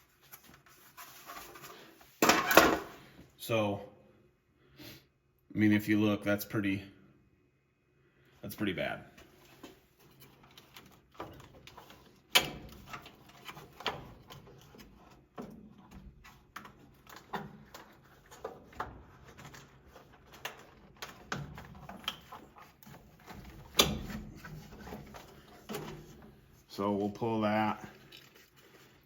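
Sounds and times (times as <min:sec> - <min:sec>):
clicks and handling noise: 0:09.2 - 0:26.8.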